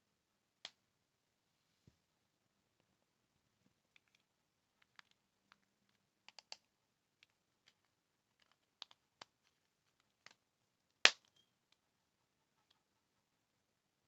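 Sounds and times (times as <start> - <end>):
plastic clicks and taps: 4.8 - 10.4.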